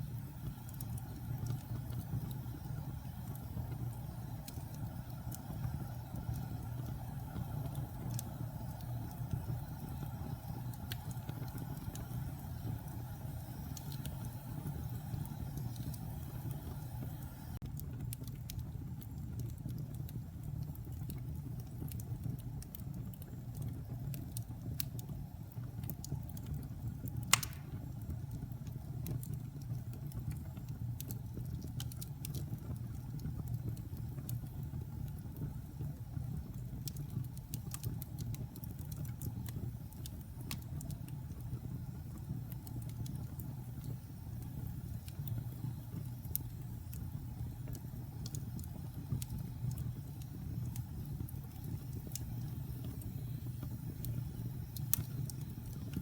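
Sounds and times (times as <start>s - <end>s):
flames rushing: 0.0s - 17.6s, 27.1s - 28.2s, 35.3s - 56.0s
fire crackling: 0.0s - 56.0s
loud pop from fire: 27.3s - 27.9s.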